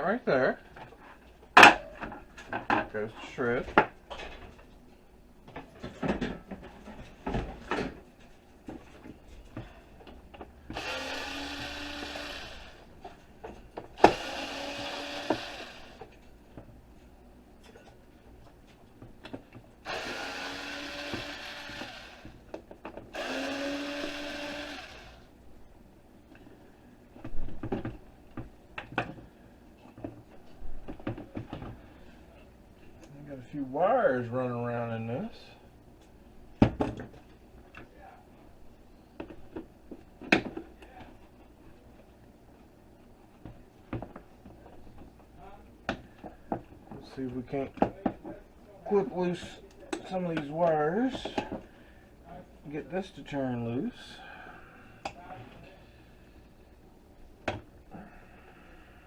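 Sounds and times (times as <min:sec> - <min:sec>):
knocks and rattles of parts: 0:05.4 - 0:10.8
power drill motor whine: 0:10.7 - 0:12.9, 0:14.0 - 0:16.1, 0:19.8 - 0:22.4, 0:23.1 - 0:25.3.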